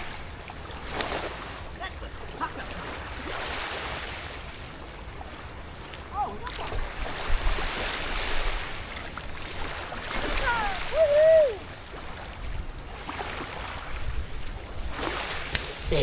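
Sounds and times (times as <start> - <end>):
shallow water splashing: 0.0 - 16.0
wind rumbling on microphone: 6.4 - 16.0.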